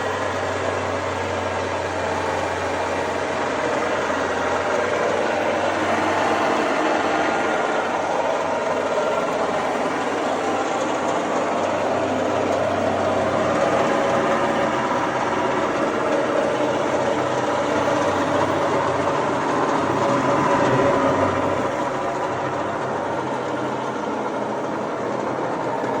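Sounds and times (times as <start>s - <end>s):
engine running wood chipper: 0.0s - 26.0s.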